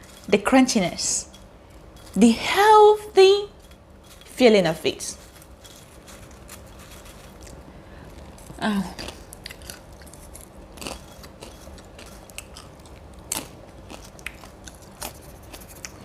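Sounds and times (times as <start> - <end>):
popcorn crunching: 0.0 - 16.0.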